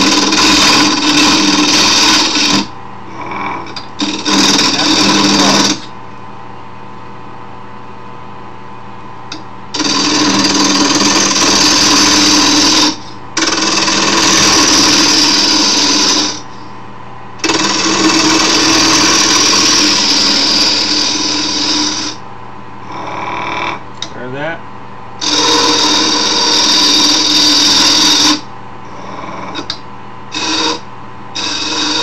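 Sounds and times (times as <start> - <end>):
lathe motor hum: 0.0 - 5.9, 9.3 - 16.5, 17.4 - 22.2, 25.2 - 28.4, 31.4 - 32.0
turning tool cutting wood: 0.0 - 5.9, 9.3 - 16.5, 17.4 - 22.2, 25.2 - 28.5, 29.5 - 30.8, 31.4 - 32.0.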